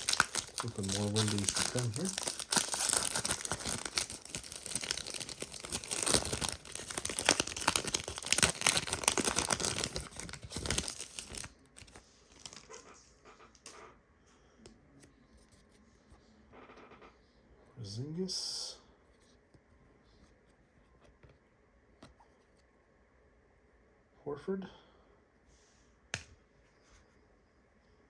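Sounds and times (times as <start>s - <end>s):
foil wrapper crinkling and tearing: 0.0s - 12.7s.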